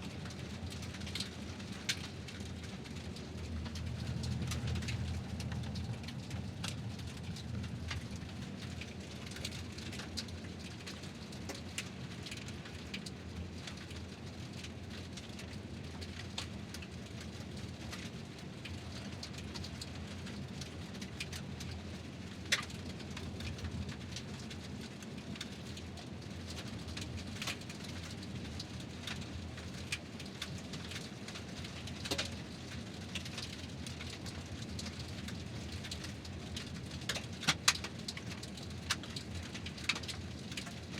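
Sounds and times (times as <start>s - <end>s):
vehicle low rumble: 0.0s - 12.4s.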